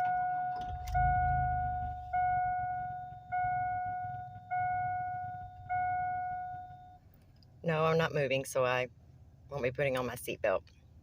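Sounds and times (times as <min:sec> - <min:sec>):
seatbelt warning chime: 0:00.0 - 0:07.2
car engine idling: 0:00.0 - 0:07.8.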